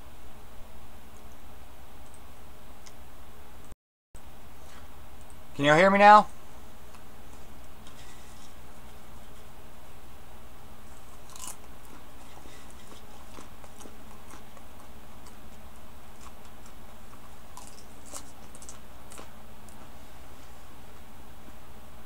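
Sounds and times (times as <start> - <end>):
low electrical hum: 0.0 - 22.0.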